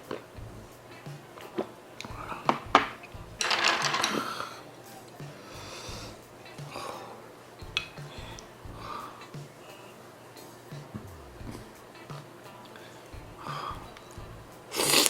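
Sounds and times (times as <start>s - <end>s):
eating noises: 0.0s - 3.3s, 4.0s - 15.0s
quiet background music: 0.0s - 15.0s
loud slurp: 14.7s - 15.0s.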